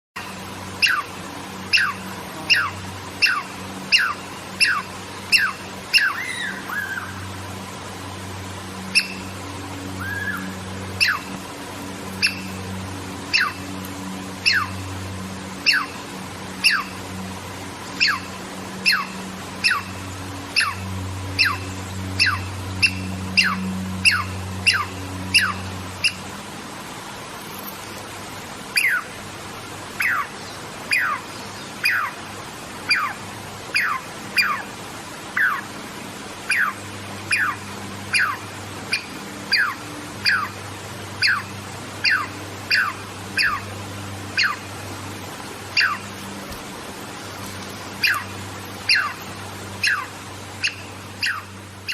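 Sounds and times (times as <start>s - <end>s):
squirrel whistled calls: 0.8s - 1.1s, 1.7s - 7.2s, 8.9s - 9.3s, 10.0s - 11.4s, 12.1s - 12.6s, 13.3s - 13.7s, 14.4s - 14.8s, 15.6s - 16.0s, 16.6s - 17.0s, 18.0s - 26.2s, 28.8s - 29.1s, 30.0s - 30.3s, 30.9s - 32.2s, 32.9s - 34.7s, 35.4s - 35.7s, 36.5s - 40.6s, 41.2s - 43.7s, 44.4s - 44.7s, 45.8s - 46.1s, 48.0s - 48.3s, 48.9s - 49.2s, 49.8s - 51.9s.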